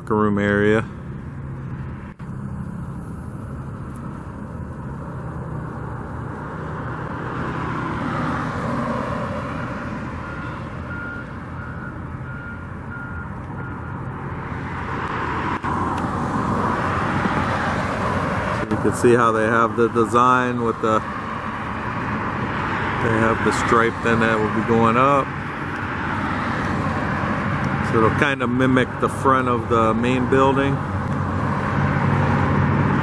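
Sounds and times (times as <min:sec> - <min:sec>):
hum of engines and traffic: 0:00.0 - 0:33.0
backup alarm beeping: 0:10.2 - 0:14.1.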